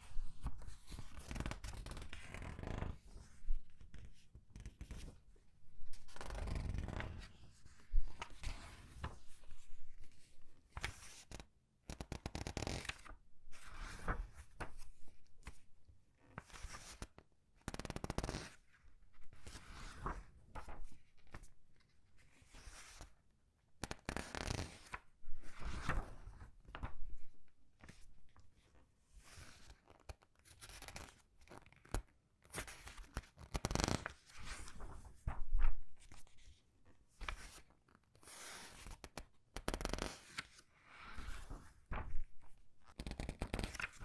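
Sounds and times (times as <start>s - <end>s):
paper pages rustling and crinkling: 30.5s - 36.5s, 37.2s - 37.7s, 41.2s - 42.6s, 43.2s - 44.0s.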